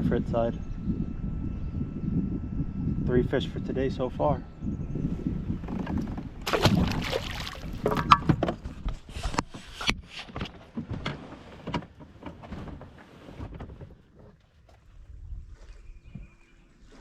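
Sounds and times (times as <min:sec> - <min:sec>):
knocks and clicks on kayak: 0:07.7 - 0:12.4.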